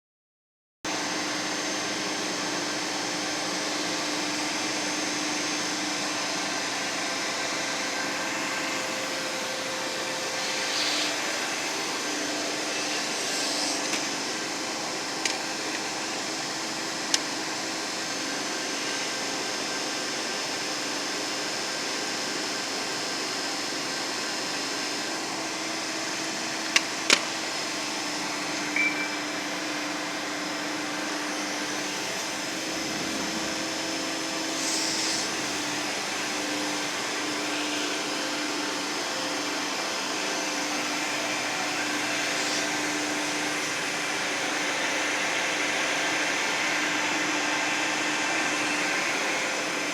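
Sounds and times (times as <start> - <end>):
short high tone: 28.8 - 29.4
machine whirring: 31.1 - 39.6.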